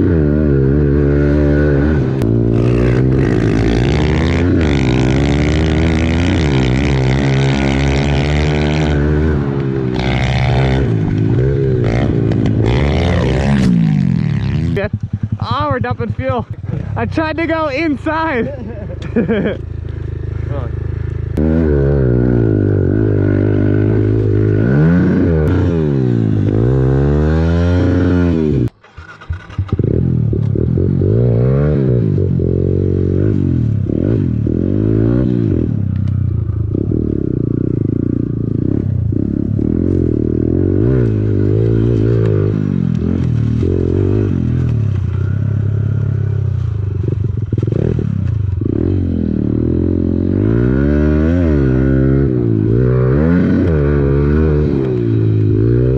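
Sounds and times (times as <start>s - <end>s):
small motorbike engine revving: 21.3s - 36.0s.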